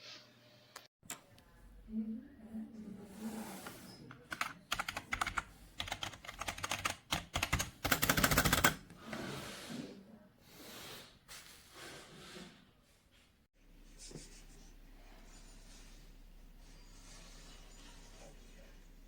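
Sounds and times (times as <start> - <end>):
computer keyboard typing: 4.2 - 8.8.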